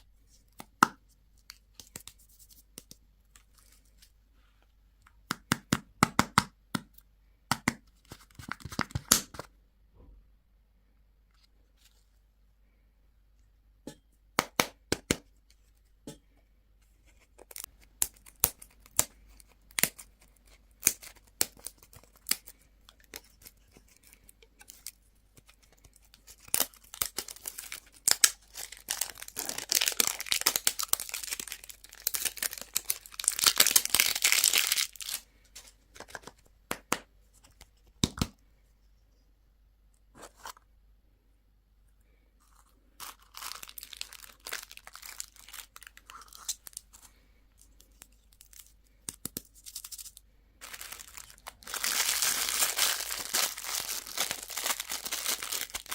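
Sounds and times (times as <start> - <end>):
wrapper tearing and crinkling: 25.8 - 35.2, 43.0 - 46.8, 49.5 - 55.9.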